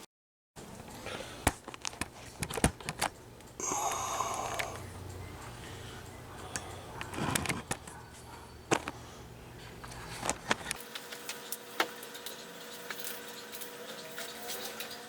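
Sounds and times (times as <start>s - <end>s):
low background hum: 0.6s - 15.0s
packaging clicks and taps: 1.4s - 3.6s.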